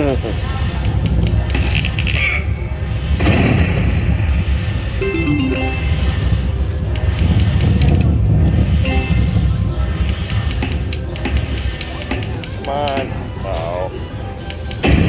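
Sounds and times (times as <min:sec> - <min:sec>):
slot machine music and effects: 0:04.9 - 0:13.0.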